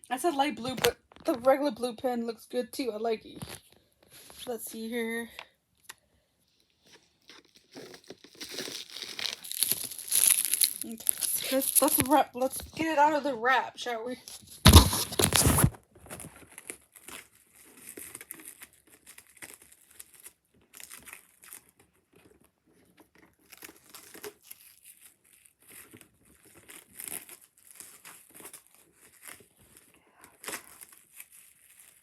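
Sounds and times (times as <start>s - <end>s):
plastic wrapping crinkling and tearing: 3.3s - 4.5s, 6.8s - 12.9s, 14.2s - 32.0s.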